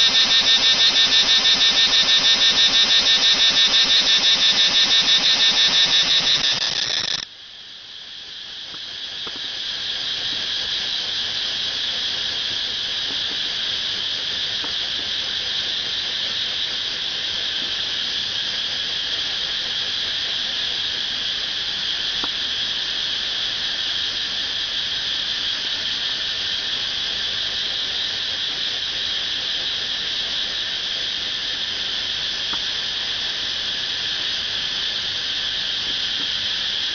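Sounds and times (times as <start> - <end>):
cicada buzzing: 0.0 - 7.3.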